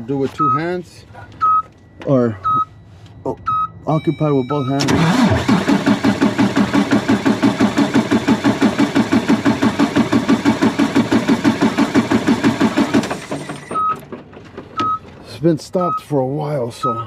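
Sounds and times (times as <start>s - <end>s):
diesel engine cranking on starter: 4.6s - 14.9s.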